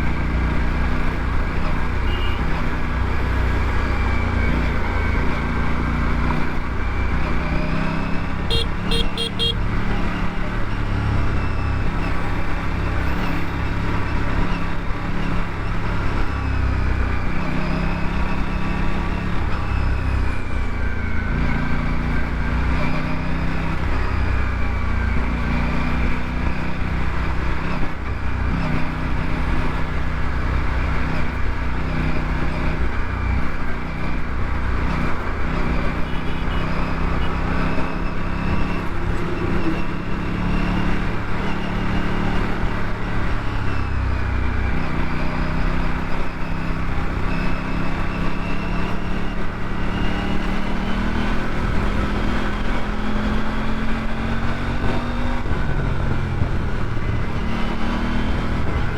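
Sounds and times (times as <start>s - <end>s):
motorcycle engine running: 8.2s - 10.7s.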